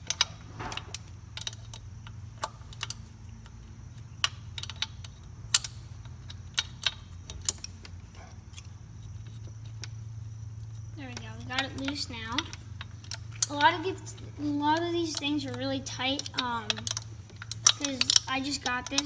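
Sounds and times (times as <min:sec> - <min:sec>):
low steady hum: 0:00.0 - 0:19.0
wrench clicking on metal nut: 0:16.2 - 0:19.0.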